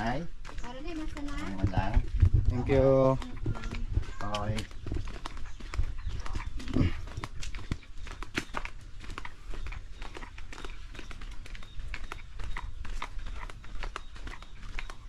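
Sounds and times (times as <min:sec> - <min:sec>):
steady low rumble: 0:00.0 - 0:08.2
footsteps on rough path: 0:00.0 - 0:15.0.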